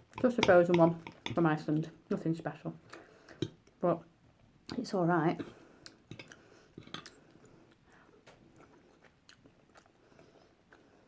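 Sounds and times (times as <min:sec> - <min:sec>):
person chewing food: 0:05.4 - 0:11.0.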